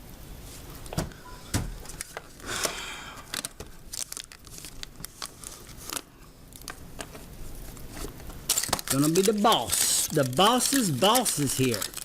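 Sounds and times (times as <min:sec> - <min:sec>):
tearing crinkling rush: 0:03.3 - 0:06.7, 0:07.6 - 0:12.0.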